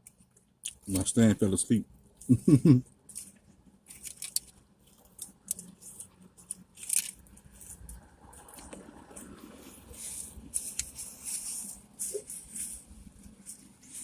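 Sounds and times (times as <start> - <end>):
biting and chewing food: 3.0 - 12.0.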